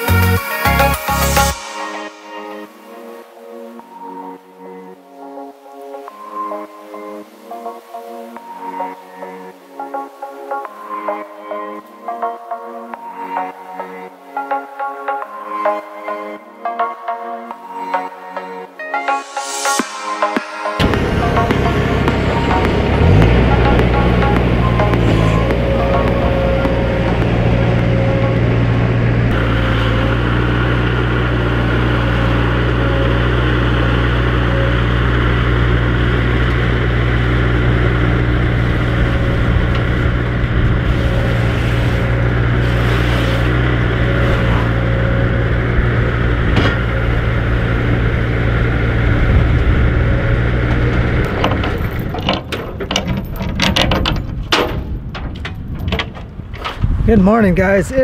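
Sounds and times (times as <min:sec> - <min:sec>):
heavy equipment engine running: 0:19.2 - 0:56.6
clicks and knocks: 0:51.3 - 0:56.8.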